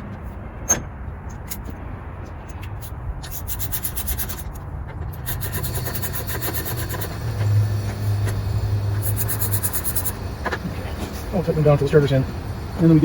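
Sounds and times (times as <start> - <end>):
steady low hum: 0.0 - 13.0
rapid ratcheting clicks: 2.5 - 10.6.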